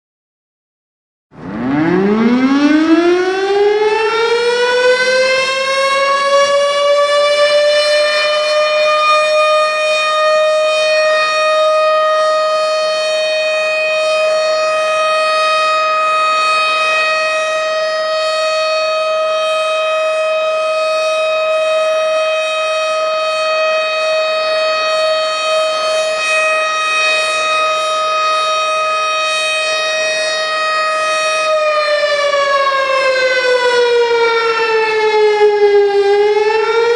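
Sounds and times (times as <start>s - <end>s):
warning siren wailing: 1.3s - 36.9s.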